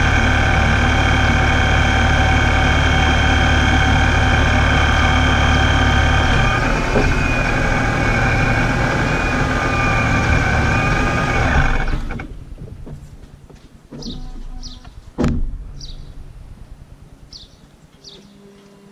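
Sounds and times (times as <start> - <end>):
supercharger whine: 0.0 - 12.4
engine rumble: 0.0 - 18.1
sharp knock: 15.2 - 15.6.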